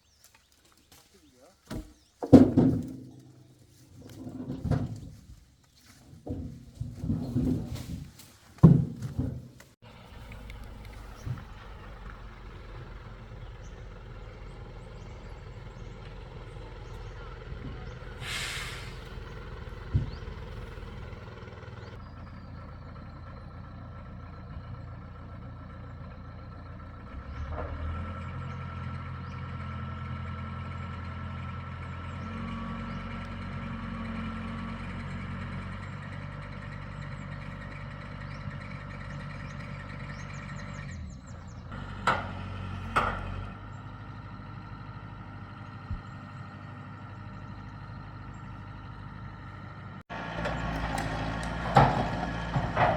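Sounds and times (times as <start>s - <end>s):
heavy vehicle engine running: 2.6s - 52.9s.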